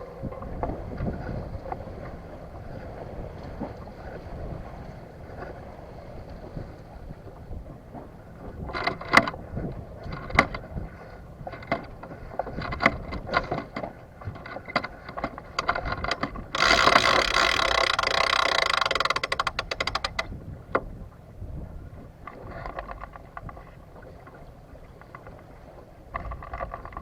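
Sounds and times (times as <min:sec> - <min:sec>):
deck gear clicks and knocks: 0:08.7 - 0:09.4, 0:10.0 - 0:10.7, 0:11.5 - 0:20.9, 0:26.1 - 0:27.0
rapid ratcheting clicks: 0:15.6 - 0:20.3.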